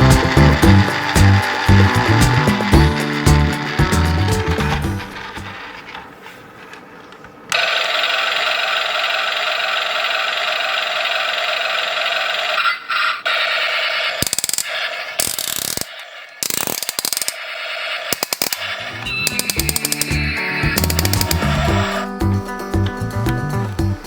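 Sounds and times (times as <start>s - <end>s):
toy electronic engine sound: 0.0s - 5.9s, 7.5s - 22.1s
rapid clicking and rattling: 0.0s - 6.0s.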